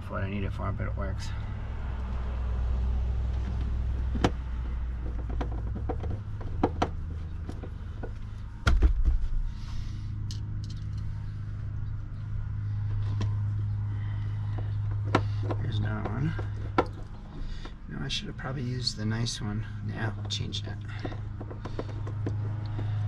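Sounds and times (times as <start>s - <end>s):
steady low hum: 0.0s - 23.0s
loud thump: 8.6s - 9.3s.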